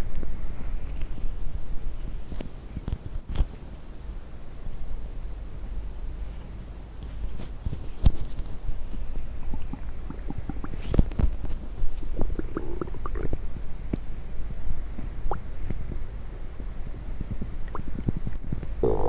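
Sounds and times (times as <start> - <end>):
stomach gurgling: 9.4 - 11.4, 12.0 - 13.5, 17.7 - 19.0.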